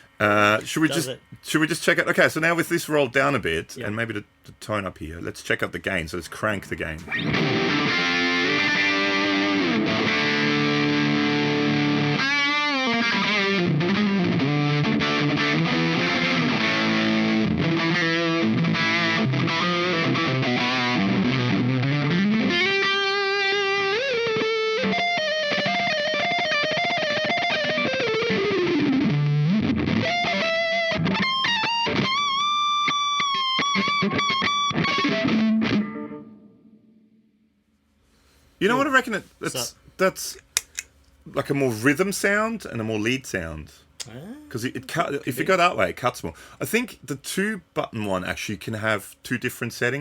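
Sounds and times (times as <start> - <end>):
distorted electric guitar: 7.0 - 37.1.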